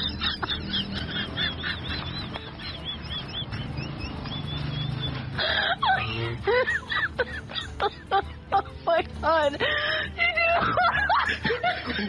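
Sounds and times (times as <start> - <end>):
birds calling: 0.0 - 8.2.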